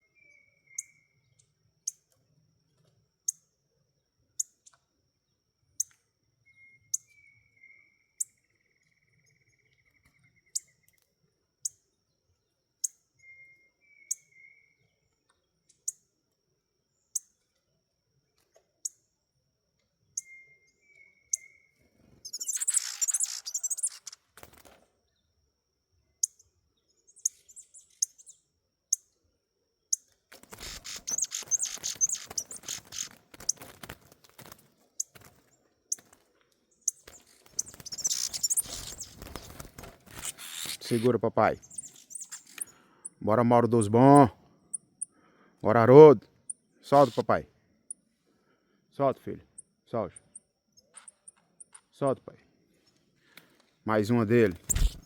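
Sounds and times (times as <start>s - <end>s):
songbirds chirping: 0.0s - 55.0s
twittering birdsong: 0.0s - 55.0s
short low bird whistles: 13.2s - 14.7s, 20.2s - 21.7s, 22.3s - 24.1s, 54.6s - 55.0s.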